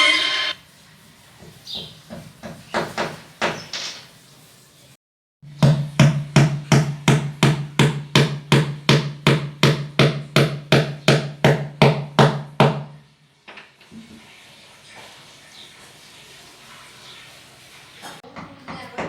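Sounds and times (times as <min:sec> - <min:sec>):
hammer blows: 0:00.0 - 0:00.6.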